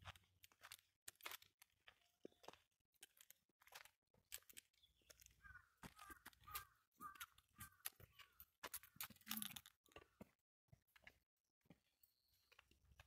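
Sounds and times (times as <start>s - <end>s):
footsteps crunching on trail: 0.0s - 13.0s
bird chirping: 4.7s - 8.4s, 11.9s - 12.8s.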